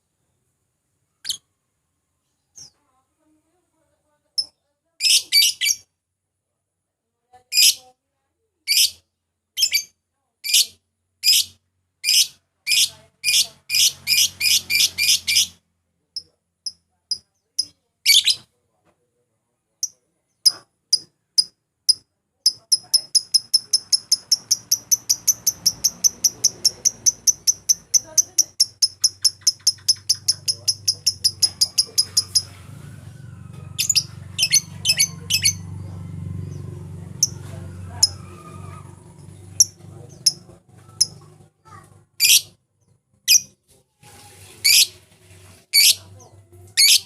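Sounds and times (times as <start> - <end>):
lovebird chirping: 10.5 - 15.6, 19.8 - 32.6, 33.8 - 36.6, 37.2 - 38.2.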